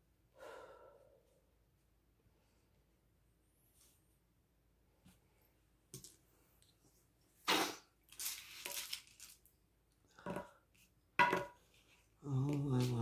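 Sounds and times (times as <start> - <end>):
raspy breath: 0.4 - 1.4.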